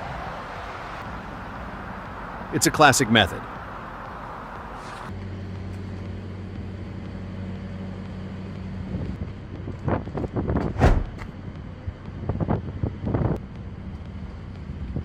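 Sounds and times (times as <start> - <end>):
engine humming steadily: 0.0 - 15.0
sharp knocks: 10.8 - 11.4
short rush of noise: 10.8 - 11.4.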